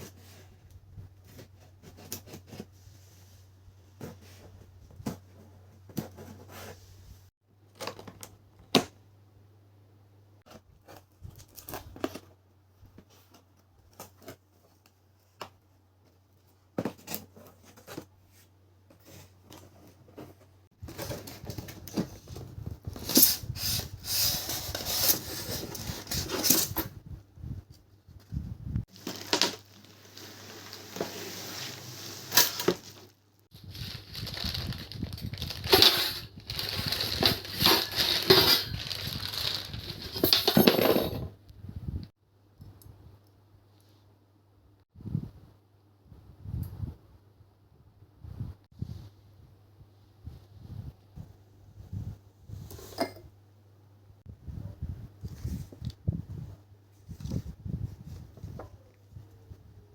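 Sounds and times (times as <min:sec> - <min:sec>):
packaging rustling and crinkling: 0:28.9 - 0:41.1.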